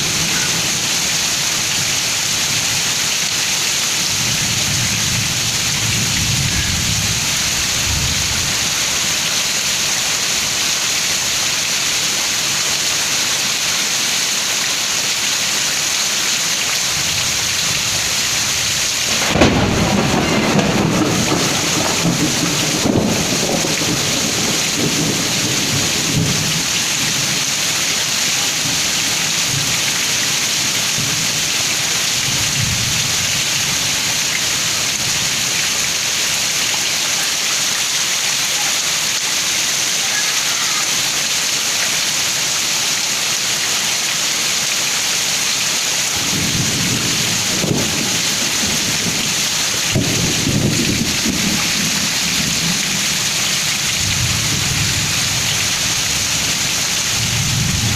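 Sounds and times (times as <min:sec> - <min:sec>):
heavy rain pouring: 0:00.0 - 0:57.9
low rumbles of thunder: 0:18.7 - 0:27.4, 0:46.2 - 0:57.9
thunder clap: 0:19.0 - 0:26.7, 0:46.2 - 0:56.2.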